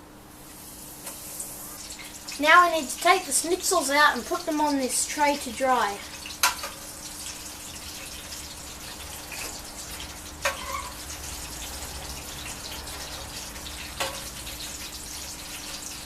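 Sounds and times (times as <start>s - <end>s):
oil sizzling in a frying pan: 0.3s - 16.0s.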